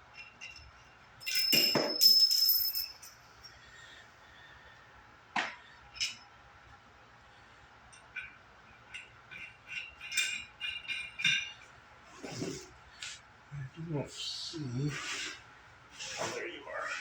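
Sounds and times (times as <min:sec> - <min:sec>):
metal parts clattering and clinking: 0:00.2 - 0:03.2.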